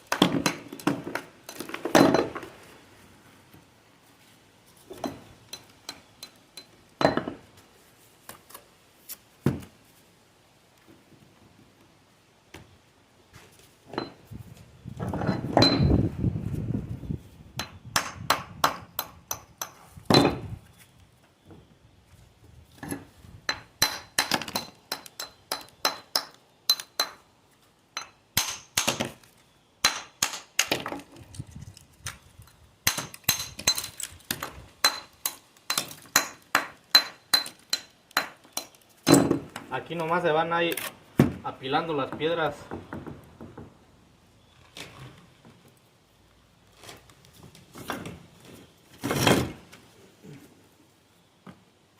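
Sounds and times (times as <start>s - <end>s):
stone clinking on stone: 23.5s - 27.2s, 32.9s - 34.1s.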